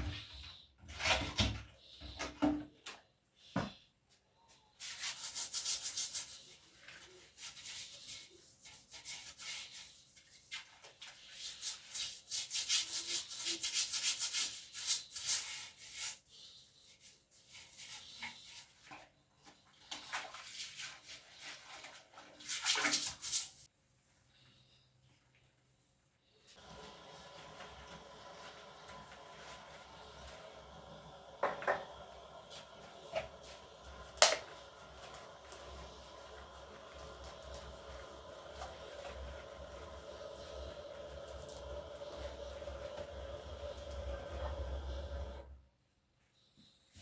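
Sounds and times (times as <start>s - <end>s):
close-up rubbing strokes: 4.8s - 19.1s.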